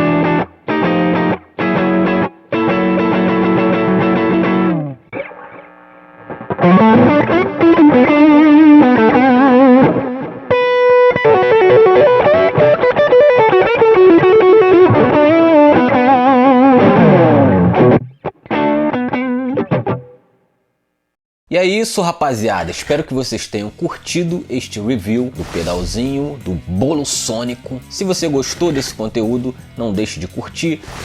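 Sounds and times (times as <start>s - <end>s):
distorted electric guitar: 0.0s - 20.2s.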